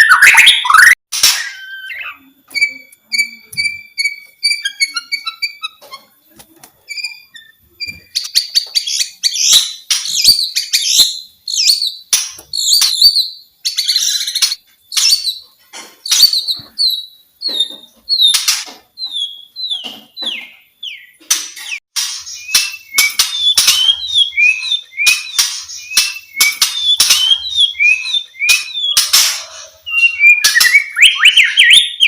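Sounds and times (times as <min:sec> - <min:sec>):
bird varied whistling song: 0:22.4 - 0:29.0, 0:29.9 - 0:32.0.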